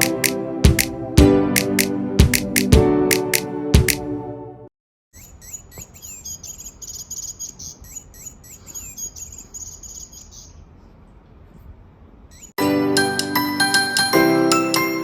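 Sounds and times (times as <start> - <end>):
electronic bird chirps: 5.1 - 10.6, 12.3 - 12.6.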